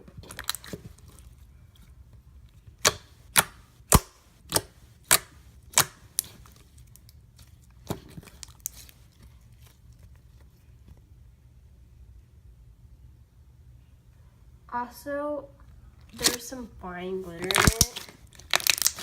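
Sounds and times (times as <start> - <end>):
slime popping: 2.8 - 7.2, 17.4 - 19.0.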